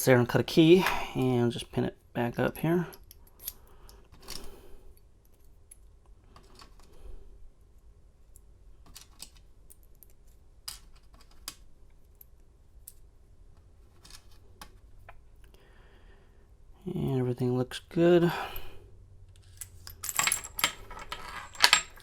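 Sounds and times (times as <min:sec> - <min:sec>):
metallic clicks of lock parts: 0:02.9 - 0:06.9, 0:08.3 - 0:13.0, 0:19.3 - 0:22.0.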